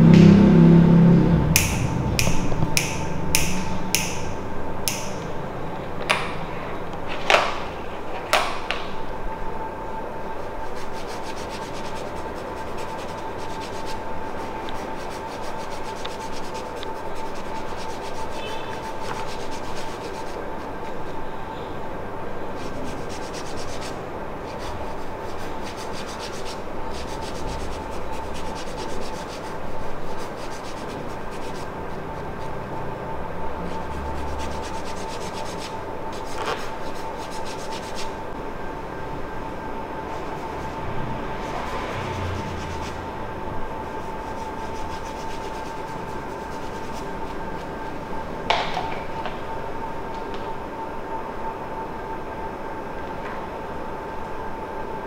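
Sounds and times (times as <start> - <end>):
faint steady hum: 0.0 - 55.0
sharp snaps: 1.6 - 4.2, 4.9 - 5.2
hands rubbing skin swishing: 10.4 - 21.0, 22.6 - 32.6, 33.7 - 38.2, 44.0 - 47.8.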